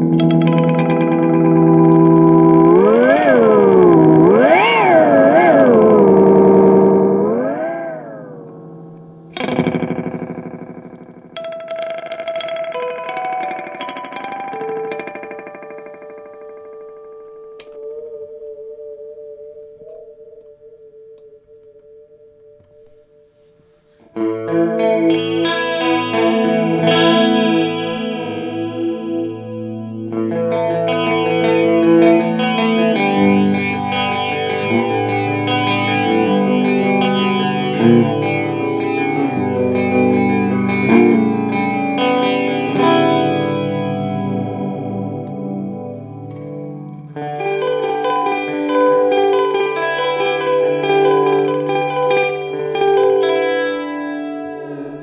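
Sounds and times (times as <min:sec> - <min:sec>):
electric guitar chords with chorus: 0:00.0 - 0:55.0.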